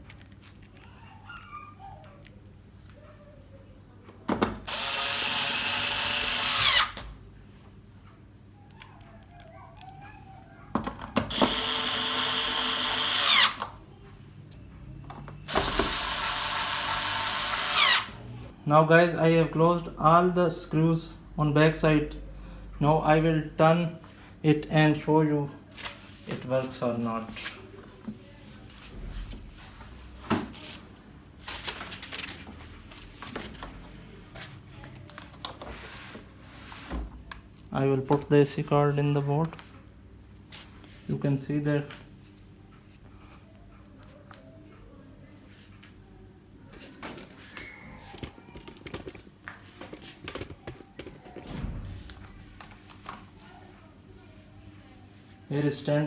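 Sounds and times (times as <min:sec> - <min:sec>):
power screwdriver whining: 0:04.7 - 0:07.0, 0:11.3 - 0:13.7, 0:15.5 - 0:18.2.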